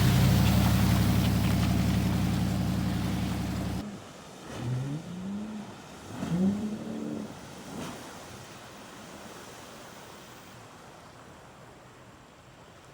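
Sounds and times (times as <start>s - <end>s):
engine running: 0.0s - 3.8s.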